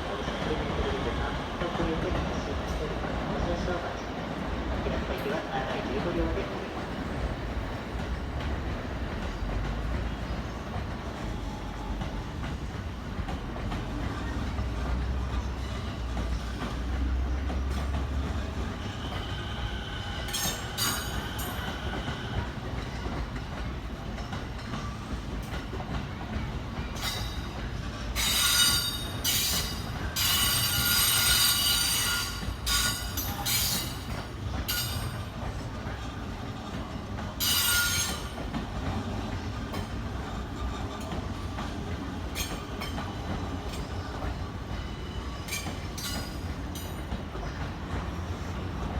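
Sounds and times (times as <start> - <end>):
electric train rumbling: 0.0 - 48.9
high-pitched brake squeal: 28.2 - 34.0, 37.4 - 38.2.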